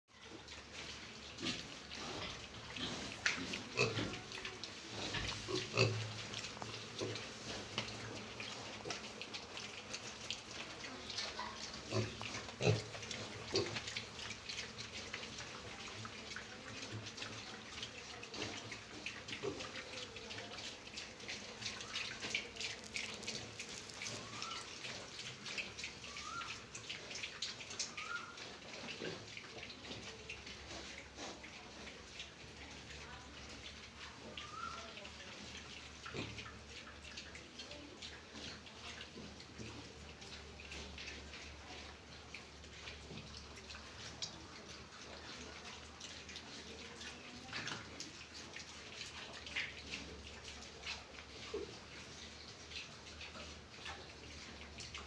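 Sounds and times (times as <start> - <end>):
piglets chewing wetly: 0.1 - 55.0
piglets grunting: 5.0 - 6.1.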